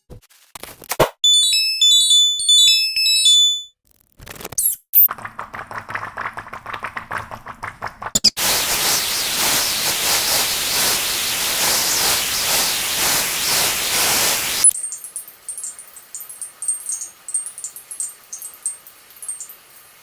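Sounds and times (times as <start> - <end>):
loud dense hiss: 8.4 - 14.7.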